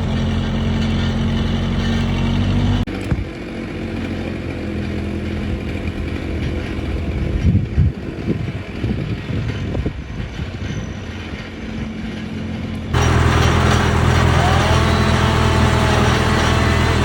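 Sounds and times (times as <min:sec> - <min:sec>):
motor engine droning: 0:00.0 - 0:09.0, 0:12.7 - 0:17.0.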